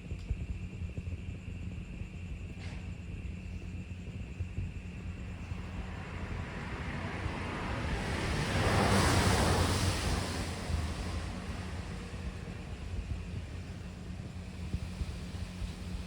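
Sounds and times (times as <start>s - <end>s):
low wind rumble: 0.0s - 16.0s
heavy rain: 6.0s - 13.3s.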